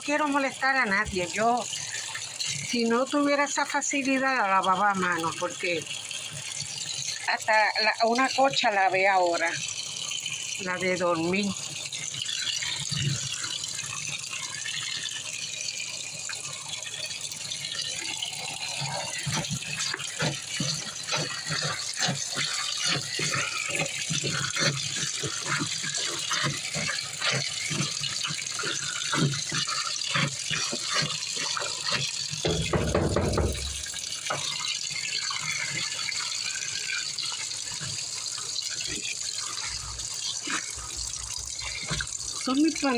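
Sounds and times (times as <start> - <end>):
water running into washing machine: 0.0 - 42.9
light knocks and rattles: 32.4 - 34.6.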